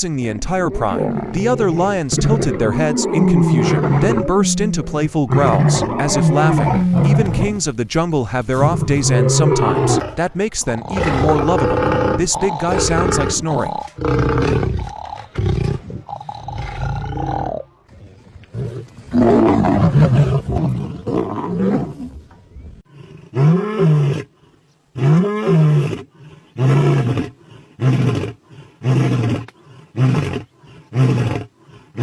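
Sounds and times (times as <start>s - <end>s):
lion grunting: 0.0s - 22.2s
lion roaring: 0.5s - 7.8s, 8.4s - 22.2s.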